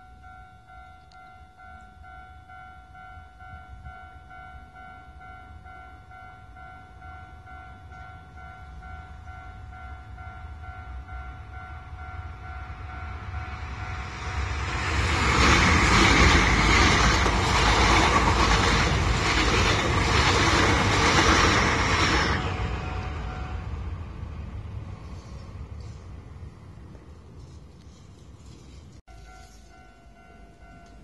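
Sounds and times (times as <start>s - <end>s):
electric train passing: 0.0s - 28.5s, 29.1s - 31.0s
wheels clattering over rails: 14.8s - 22.5s.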